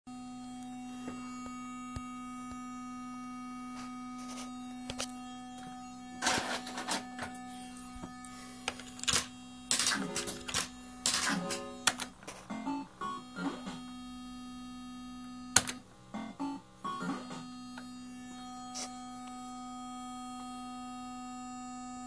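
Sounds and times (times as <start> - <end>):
electrical hum and whine: 0.1 - 22.0
scattered clicks: 9.0 - 12.8.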